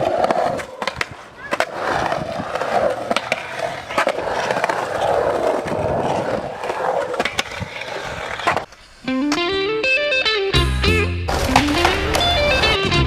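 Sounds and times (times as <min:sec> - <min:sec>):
skateboard wheels clicking over cracks: 0:00.0 - 0:08.9, 0:11.3 - 0:12.8
skateboard rolling on pavement: 0:00.0 - 0:09.5, 0:11.3 - 0:13.0.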